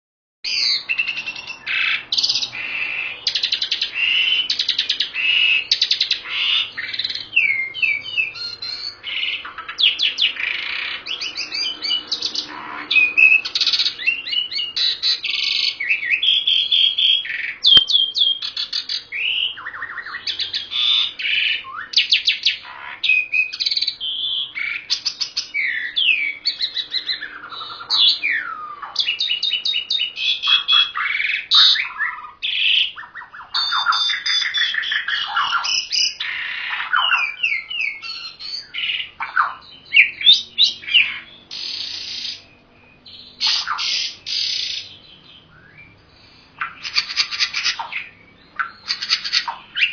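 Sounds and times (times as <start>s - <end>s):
songbirds singing: 0.4s - 49.9s
sharp click: 17.7s - 18.0s.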